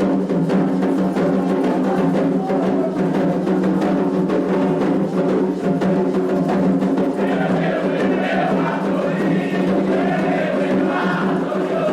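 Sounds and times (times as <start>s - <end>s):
hand drums playing rhythm: 0.0s - 11.9s
group chanting: 7.0s - 11.9s.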